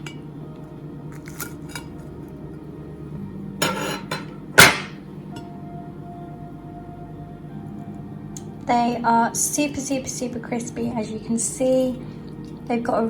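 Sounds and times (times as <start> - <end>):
crockery clinking: 3.6 - 5.5.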